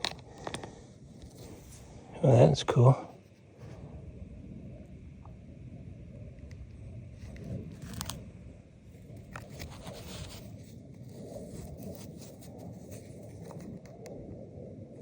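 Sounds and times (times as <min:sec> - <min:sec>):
low rumble: 0:03.1 - 0:15.0.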